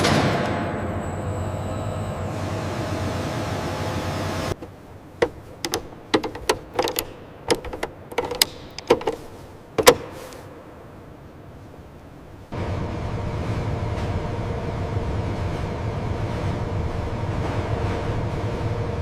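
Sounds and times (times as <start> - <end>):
mechanical hum: 0.0 - 19.0
sharp metallic clicks and knocks: 4.6 - 10.5.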